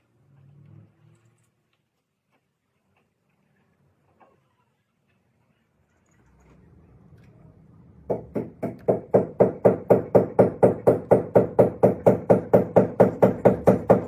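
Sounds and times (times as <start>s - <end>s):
fast knocks: 8.1s - 14.0s.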